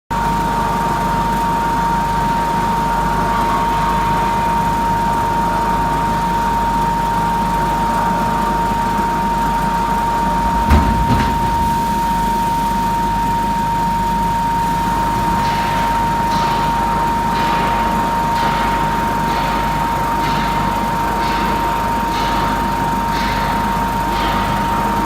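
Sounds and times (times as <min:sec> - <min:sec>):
machine hum with high whine: 0:00.4 - 0:25.0
short knock: 0:10.4 - 0:12.6.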